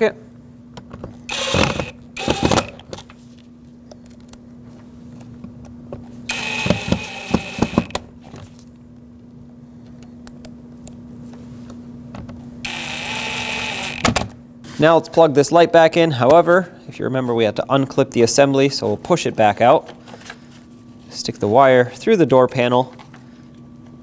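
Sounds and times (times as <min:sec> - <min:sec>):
cordless screwdriver running: 0:01.3 - 0:02.8, 0:06.3 - 0:08.0, 0:12.7 - 0:14.2.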